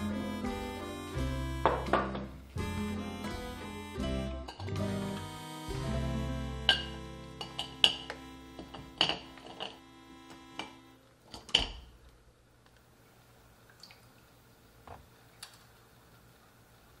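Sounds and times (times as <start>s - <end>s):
acoustic guitar music: 0.0s - 10.8s
tableware clinking: 1.6s - 2.3s, 4.4s - 4.8s, 6.7s - 9.8s.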